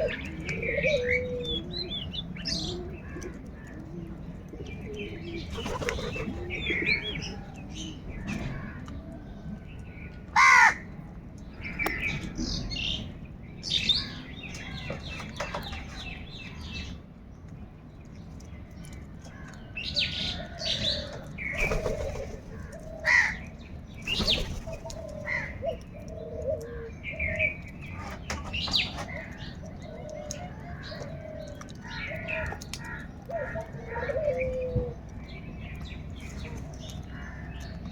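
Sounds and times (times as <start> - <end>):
small birds chirping: 0.0 - 10.3, 11.1 - 37.9
crows cawing: 10.4 - 10.9, 22.6 - 23.5, 24.8 - 25.7.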